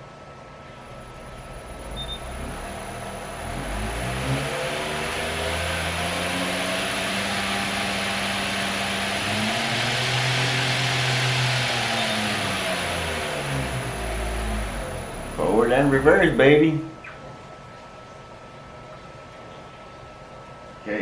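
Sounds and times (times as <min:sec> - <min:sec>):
belt grinder motor humming: 0:01.0 - 0:16.5.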